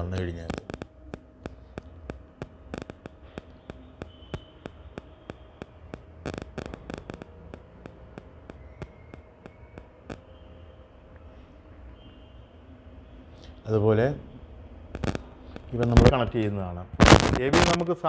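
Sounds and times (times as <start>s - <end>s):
sharp clicks and taps: 0.0s - 10.2s, 15.0s - 16.3s, 17.0s - 17.8s.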